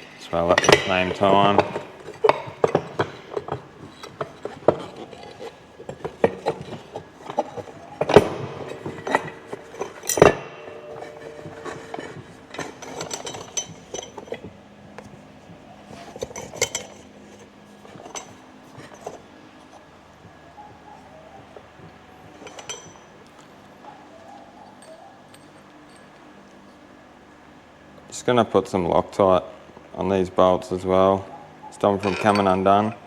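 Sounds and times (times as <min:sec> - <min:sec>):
sharp metal clanks: 0:00.0 - 0:15.1, 0:20.9 - 0:23.2, 0:31.8 - 0:33.0
metal parts clinking and knocking: 0:00.2 - 0:26.7, 0:31.7 - 0:33.0.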